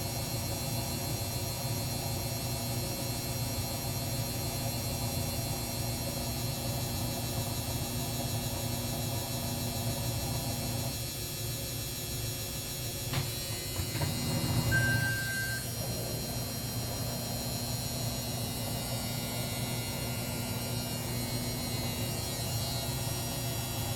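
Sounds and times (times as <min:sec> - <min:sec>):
washer-dryer humming: 0:00.0 - 0:23.9
short high electronic beep: 0:14.7 - 0:15.7.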